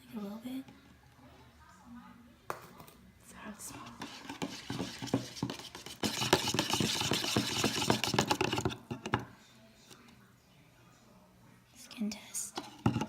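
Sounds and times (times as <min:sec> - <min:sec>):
spoon clinking and scraping container: 0:03.8 - 0:08.7.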